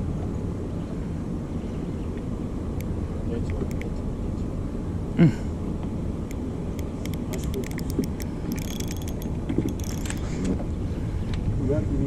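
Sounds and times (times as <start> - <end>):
steady low rumble: 0.0 - 12.0
fishing reel clicking: 6.8 - 10.3.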